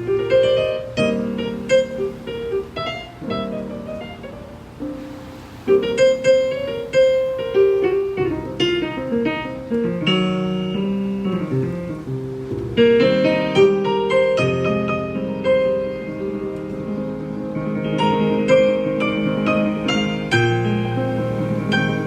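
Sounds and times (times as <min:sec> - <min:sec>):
keyboard music: 0:00.0 - 0:22.0.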